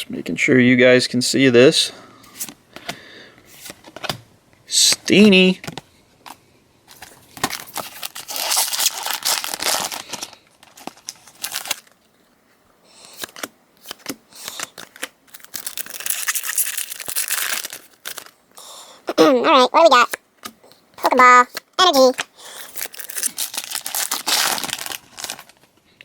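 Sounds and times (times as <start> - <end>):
foil wrapper tearing and crinkling: 7.4 - 12.0, 13.2 - 18.4, 22.2 - 25.6.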